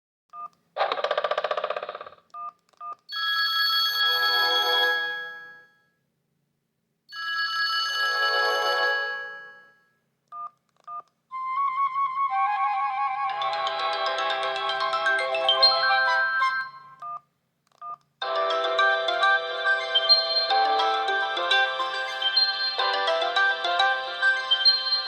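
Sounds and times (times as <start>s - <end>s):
bell-like chimes: 19.8s - 23.5s
two-tone beeps: 21.6s - 23.0s.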